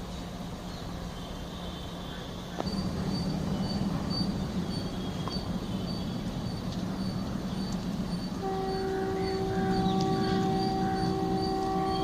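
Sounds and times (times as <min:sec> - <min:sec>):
locomotive engine drone: 0:00.0 - 0:12.0
locomotive horn chord: 0:08.3 - 0:12.0.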